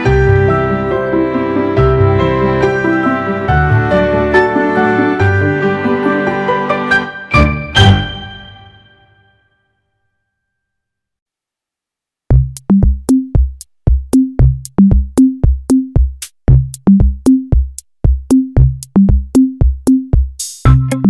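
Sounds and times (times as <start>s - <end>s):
electronic dance music: 20.5s - 21.0s.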